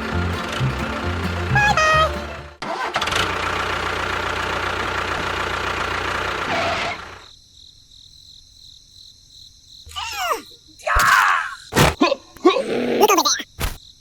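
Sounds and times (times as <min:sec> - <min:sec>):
small engine running: 0:00.0 - 0:07.3.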